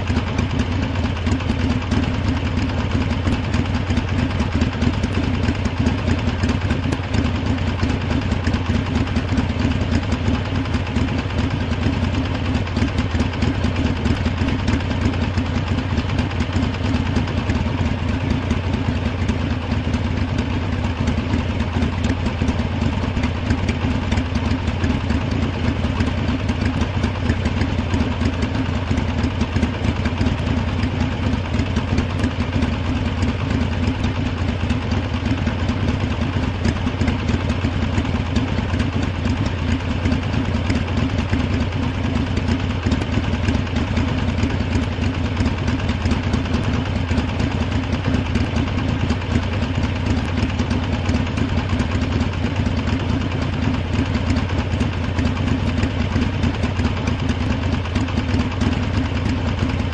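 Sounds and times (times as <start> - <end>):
motorcycle engine idling: 0.0 - 59.9.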